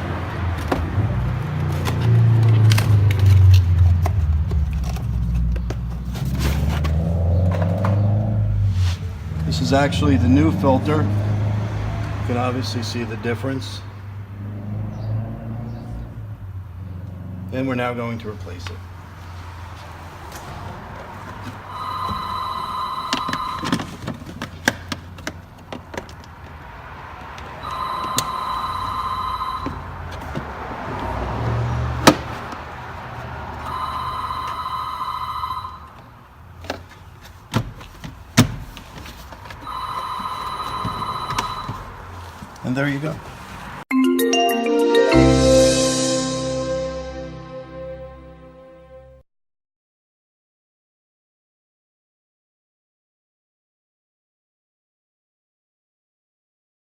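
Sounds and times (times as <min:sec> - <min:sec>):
telephone ringing: 0:21.7 - 0:24.1, 0:27.6 - 0:30.1, 0:33.7 - 0:36.1, 0:39.6 - 0:42.0
background music of sustained tones: 0:44.0 - 0:49.1.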